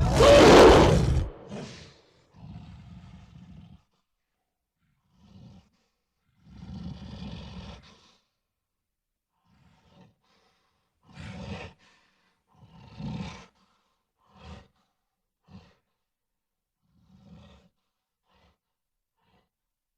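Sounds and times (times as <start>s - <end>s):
gorilla roaring: 0.0s - 1.9s.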